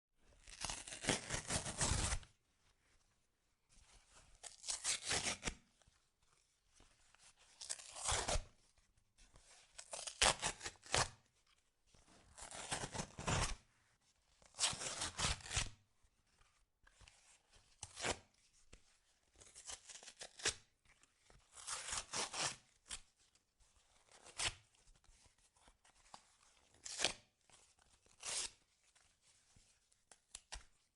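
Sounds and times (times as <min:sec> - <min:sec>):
cardboard tearing by hand: 0:00.4 - 0:02.2.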